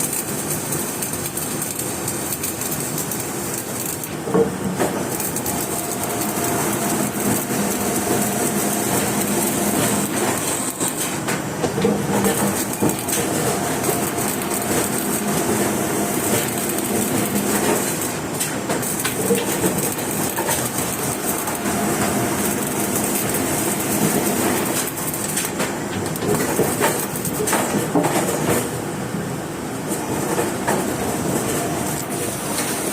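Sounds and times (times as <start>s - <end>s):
welding arc crackling and hissing: 0.0s - 27.6s.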